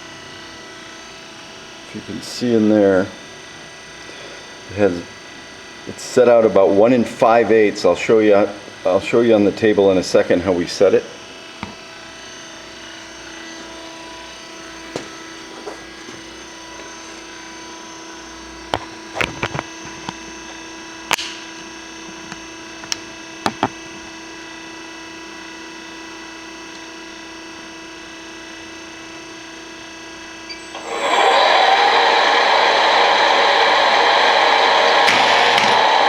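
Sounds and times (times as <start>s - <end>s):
machine electrical hum: 0.0s - 36.0s
loud rushing noise: 30.8s - 36.0s.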